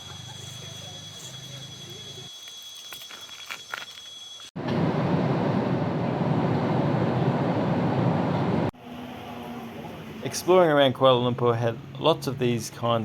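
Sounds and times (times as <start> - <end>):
loud rushing rumble: 4.6 - 9.5.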